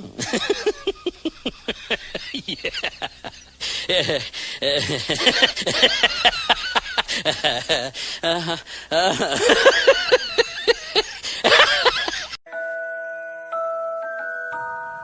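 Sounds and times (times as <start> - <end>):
snickering laughs: 0.1 - 12.4
glockenspiel tune: 12.5 - 15.0.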